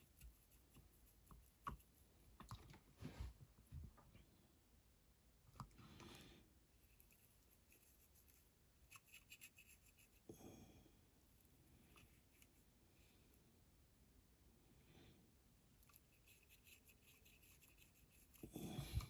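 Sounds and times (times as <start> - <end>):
paintbrush scratching and clicking: 0.0 - 2.6, 6.8 - 10.3, 11.4 - 12.7, 15.8 - 19.0.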